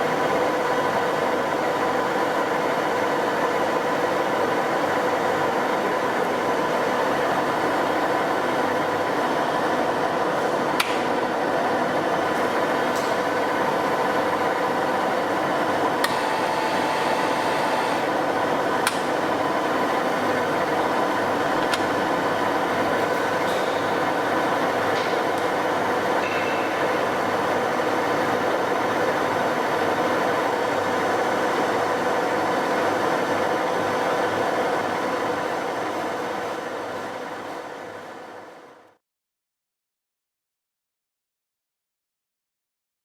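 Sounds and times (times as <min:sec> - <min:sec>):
lathe running with gear whine: 0:11.4 - 0:36.7.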